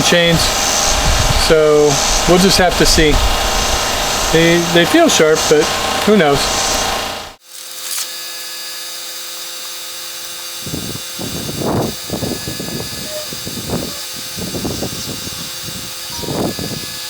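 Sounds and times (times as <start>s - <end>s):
low rumbling pulses: 0.0s - 7.4s
chain sharpener motor hum and whine: 0.0s - 17.0s.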